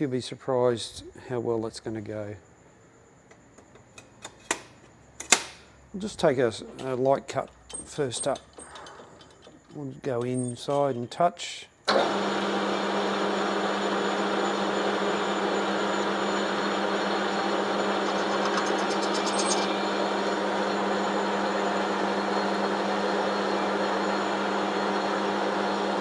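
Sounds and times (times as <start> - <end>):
metal lathe humming: 11.9 - 26.0.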